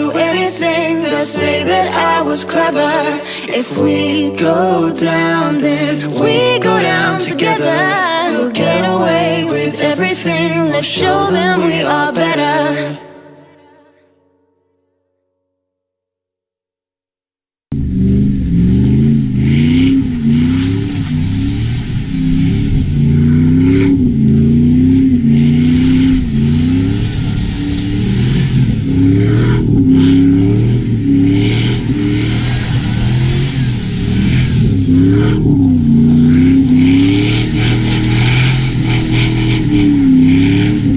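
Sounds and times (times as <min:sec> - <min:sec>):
vehicle engine revving: 0:17.7 - 0:40.9.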